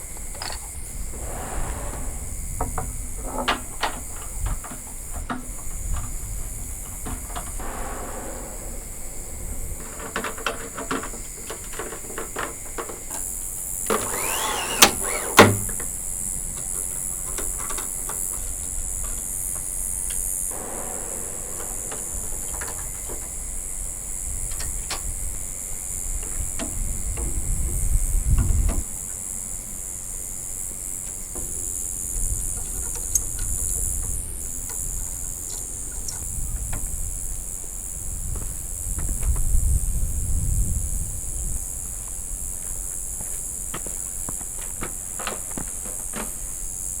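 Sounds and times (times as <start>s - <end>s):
wind rumbling on microphone: 0.0s - 13.1s, 18.4s - 29.0s, 32.0s - 42.9s
insects chirring: 0.0s - 47.0s.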